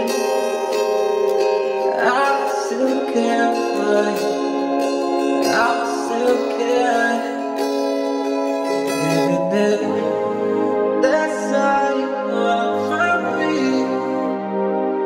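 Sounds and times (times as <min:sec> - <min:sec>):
pop song playing: 0:00.0 - 0:15.0.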